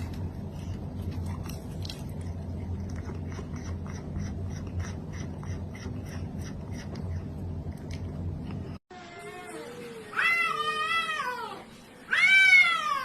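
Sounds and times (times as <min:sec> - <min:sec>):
crisp chewing crunches: 0:00.0 - 0:08.7
steady low hum: 0:00.0 - 0:08.8.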